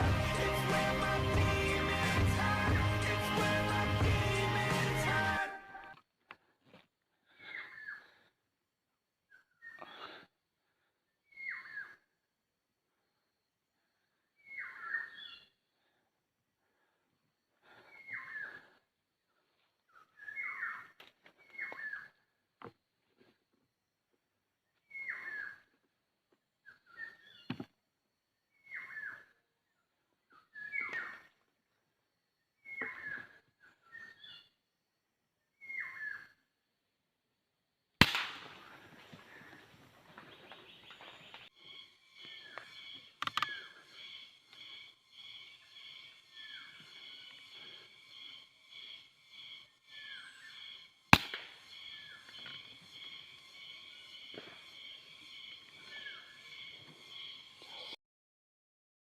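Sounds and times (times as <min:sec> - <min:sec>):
whistled bird calls: 0:11.2 - 0:12.0, 0:14.4 - 0:15.6, 0:17.8 - 0:18.7, 0:19.9 - 0:22.2, 0:24.8 - 0:25.7, 0:26.6 - 0:27.6, 0:28.5 - 0:29.4, 0:30.3 - 0:31.3, 0:32.6 - 0:34.6, 0:35.5 - 0:36.4, 0:40.3 - 0:58.0
air rifle shot: 0:38.0 - 0:38.8, 0:51.1 - 0:51.6.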